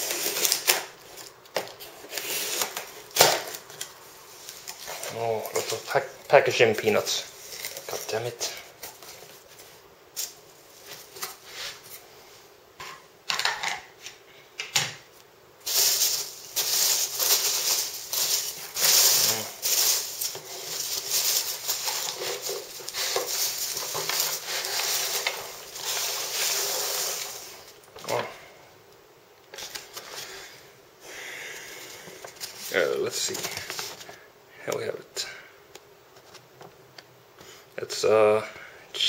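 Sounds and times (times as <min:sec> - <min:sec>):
packing peanuts rustling: 0:00.0 - 0:11.4, 0:15.6 - 0:28.2.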